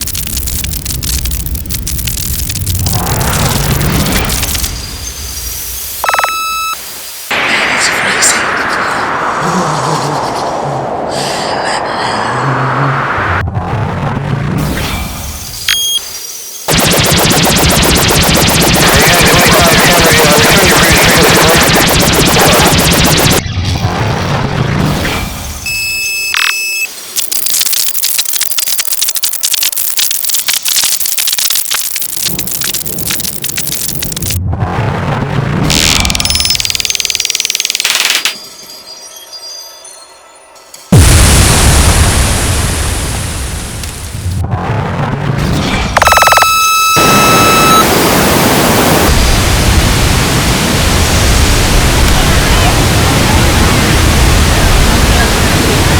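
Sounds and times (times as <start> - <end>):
crackling synthesized noise: 0.0 - 10.0, 16.7 - 24.6, 26.3 - 38.4, 40.9 - 55.9
high synthesizer tone: 16.7 - 23.4, 46.0 - 48.1.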